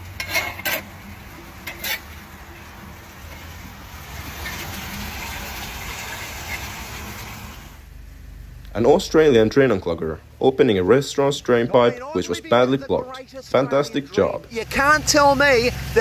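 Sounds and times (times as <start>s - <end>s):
water rushing into storm drain: 2.3s - 7.8s.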